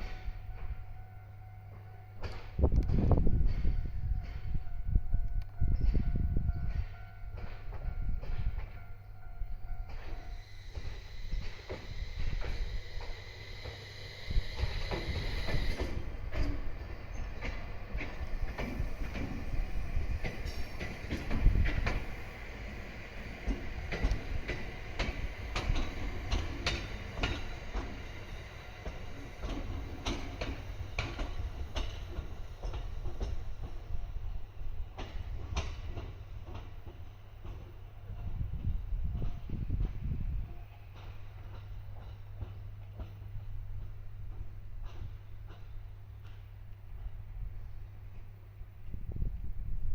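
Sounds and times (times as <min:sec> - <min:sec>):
train rumble: 0:00.0 - 0:49.9
wheels clicking over rail joints: 0:10.8 - 0:37.8.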